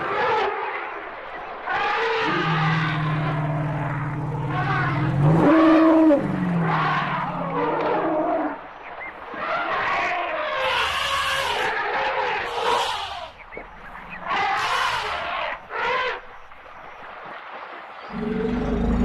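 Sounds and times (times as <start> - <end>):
rough harsh elephant calls: 12.3 - 13.4, 14.3 - 15.7
elephant low call: 18.1 - 19.0.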